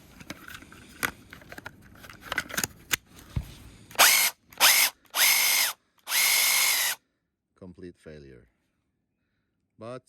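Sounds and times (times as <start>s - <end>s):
cordless screwdriver motor whining: 4.0s - 7.0s.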